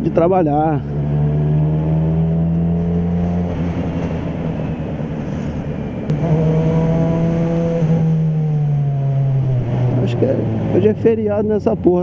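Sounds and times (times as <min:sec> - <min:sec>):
motorcycle engine running: 0:05.8 - 0:12.0.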